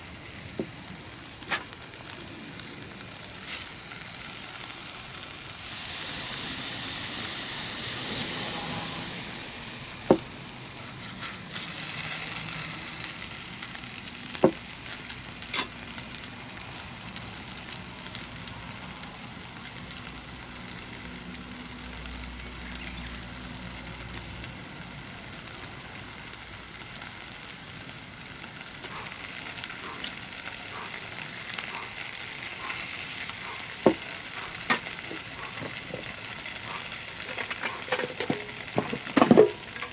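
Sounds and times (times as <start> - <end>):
food sizzling: 0.0 - 39.9
sharp pops: 0.5 - 2.2, 10.0 - 11.8, 14.2 - 15.8, 31.7 - 39.9.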